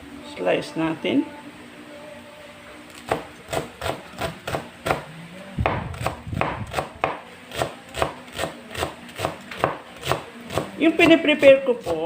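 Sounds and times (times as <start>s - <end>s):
knife slicing herbs on board: 3.0s - 5.1s, 5.9s - 12.0s.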